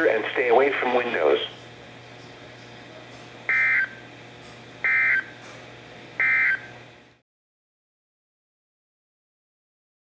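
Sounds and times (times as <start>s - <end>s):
low steady hum: 0.0s - 7.2s.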